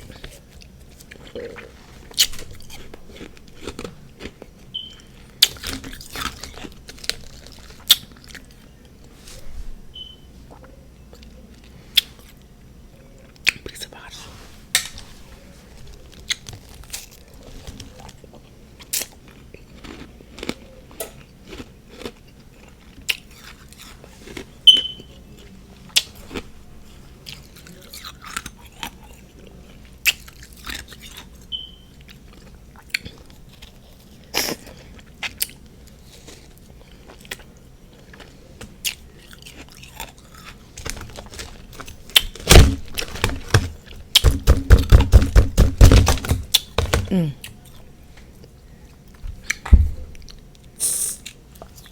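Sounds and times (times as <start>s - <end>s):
chewing frozen frost: 0.0s - 9.0s, 15.8s - 42.4s.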